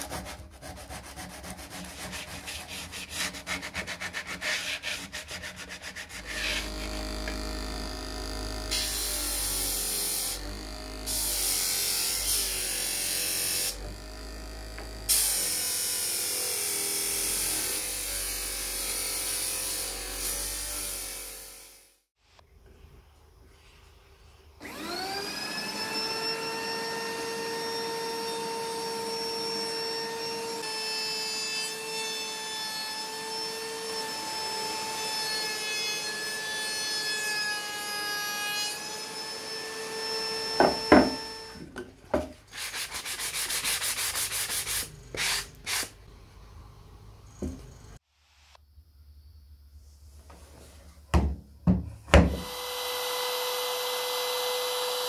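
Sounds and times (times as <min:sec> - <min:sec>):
rapid rasping strokes: 0:00.0 - 0:07.3, 0:42.5 - 0:45.9
electric power tool whining: 0:06.2 - 0:21.8, 0:24.6 - 0:41.9, 0:52.2 - 0:55.0.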